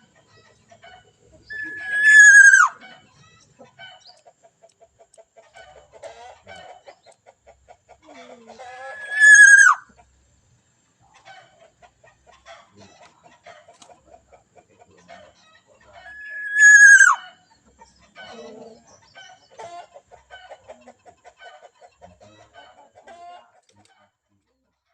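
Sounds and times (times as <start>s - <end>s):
bird rapid chattering: 0.8s - 2.8s, 8.8s - 9.8s, 16.0s - 17.3s
bird held nasal call: 1.4s - 2.8s, 8.6s - 9.8s, 16.0s - 17.3s.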